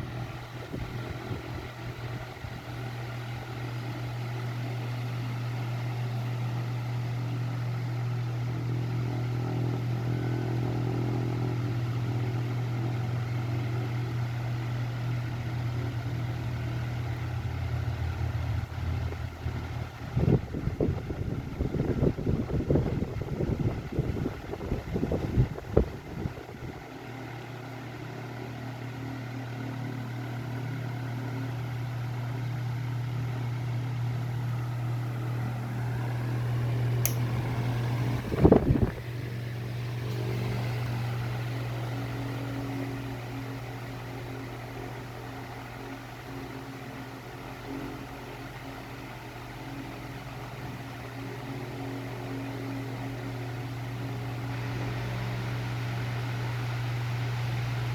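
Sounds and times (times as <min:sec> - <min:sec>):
oscillating fan humming: 0:00.0 - 0:57.9.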